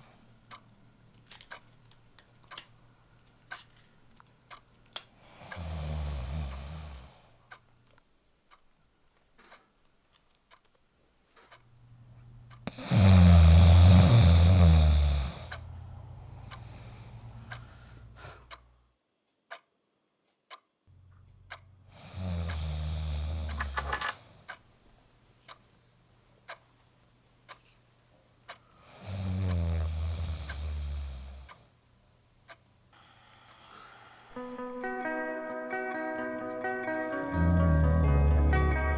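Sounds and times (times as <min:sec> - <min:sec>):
clock ticking: 0:00.0 - 0:06.9, 0:07.5 - 0:10.8, 0:11.4 - 0:19.7, 0:20.3 - 0:24.7, 0:25.4 - 0:25.7, 0:26.4 - 0:27.8, 0:28.4 - 0:28.7, 0:29.5 - 0:31.6, 0:32.4 - 0:32.7
person snoring loudly: 0:05.5 - 0:07.2, 0:12.7 - 0:15.6, 0:22.0 - 0:23.8, 0:29.0 - 0:31.5, 0:37.3 - 0:38.5.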